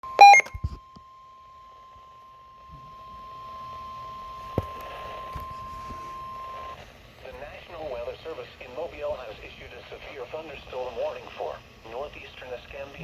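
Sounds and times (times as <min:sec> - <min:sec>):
steady warning alarm tone: 0:00.0 - 0:00.6.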